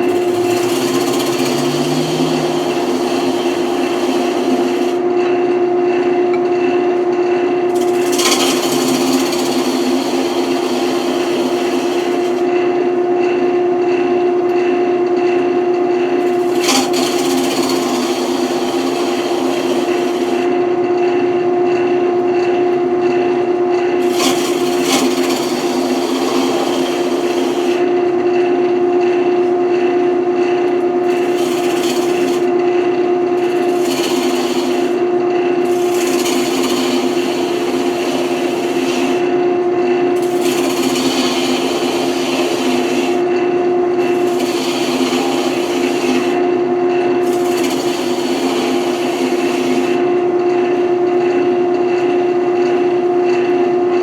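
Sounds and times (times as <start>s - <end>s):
turning tool scraping wood: 0.0s - 5.1s, 7.7s - 12.7s, 15.8s - 20.6s, 23.9s - 28.1s, 31.0s - 50.3s
wood lathe humming: 0.0s - 5.2s, 7.7s - 12.9s, 15.8s - 20.8s, 23.9s - 28.3s, 30.8s - 50.6s.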